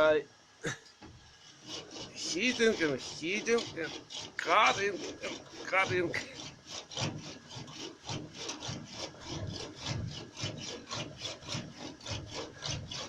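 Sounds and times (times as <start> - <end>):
hand sawing sheet metal: 1.5 - 13.0.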